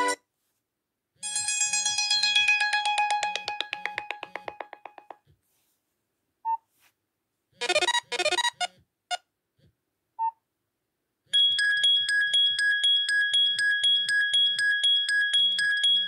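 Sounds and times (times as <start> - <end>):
electronic ringtone notes: 1.2 - 5.1, 11.4 - 16.0.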